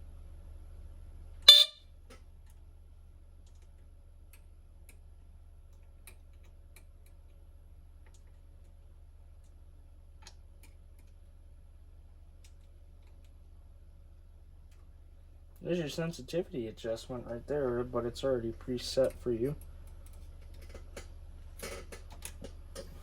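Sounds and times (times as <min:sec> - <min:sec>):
steady low hum: 0:00.0 - 0:23.0
smoke alarm horn blast: 0:01.4 - 0:01.9.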